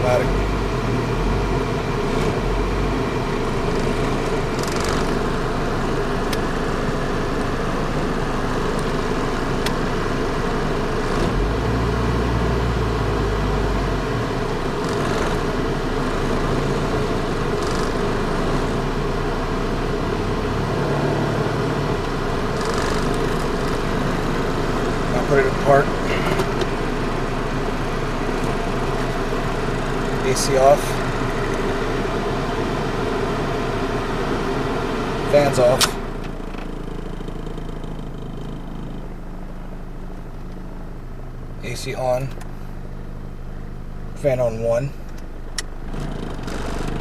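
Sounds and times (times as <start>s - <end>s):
car engine idling: 0.0s - 47.0s
blower fan running: 22.0s - 36.3s.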